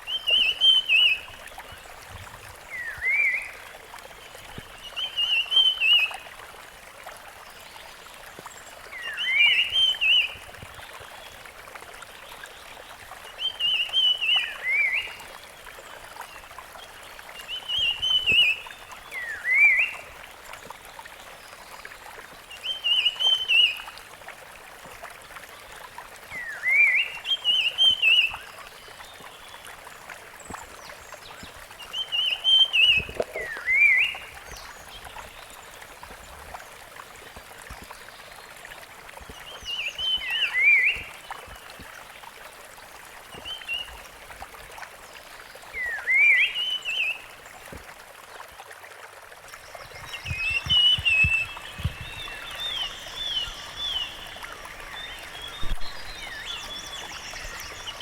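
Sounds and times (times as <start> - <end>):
steady background hiss: 50.8 - 58.0.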